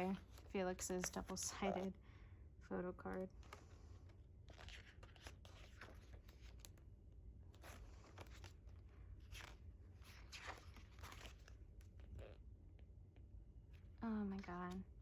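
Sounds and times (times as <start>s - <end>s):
pages being turned: 3.4s - 6.8s, 7.5s - 12.3s.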